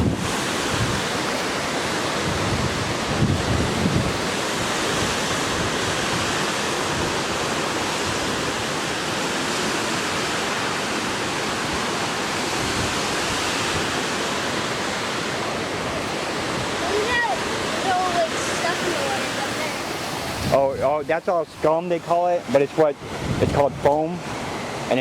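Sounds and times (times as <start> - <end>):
wind bumps on microphone: 0.0 - 7.4, 12.5 - 14.1, 15.8 - 21.2, 22.9 - 24.6
water rushing and churning: 0.0 - 25.0.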